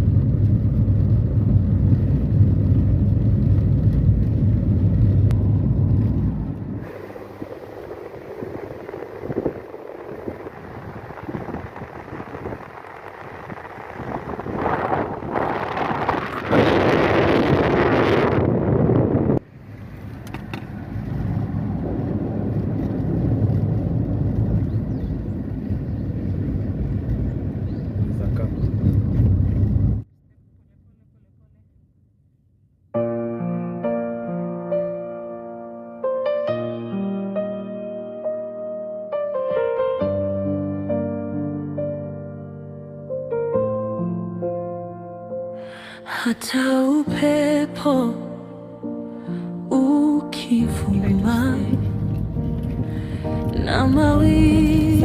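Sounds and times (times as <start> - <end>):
vehicle engine and road rumble: 0.0 - 31.7, 50.6 - 55.0.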